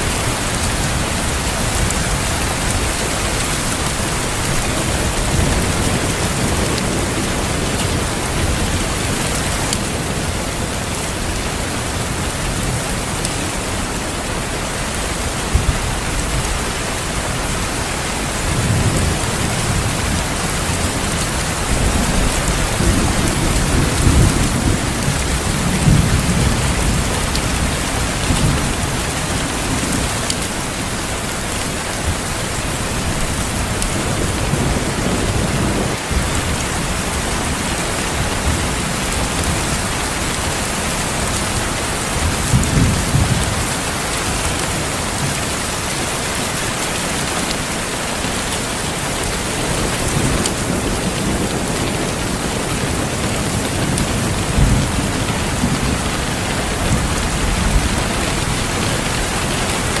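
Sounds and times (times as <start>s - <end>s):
heavy rain: 0.0s - 60.0s
low rolling thunder: 18.3s - 45.5s, 49.2s - 60.0s.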